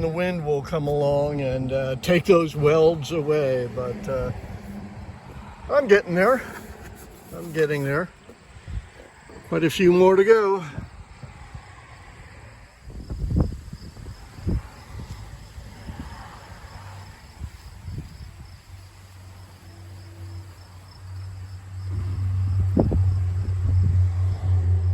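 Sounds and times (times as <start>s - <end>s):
crickets chirping: 0.0s - 24.9s
low rumble: 20.9s - 24.9s.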